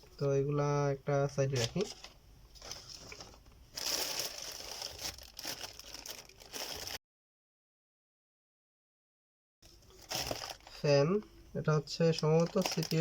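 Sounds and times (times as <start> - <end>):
packaging rustling and crinkling: 1.5 - 7.0, 9.9 - 10.8, 12.1 - 13.0.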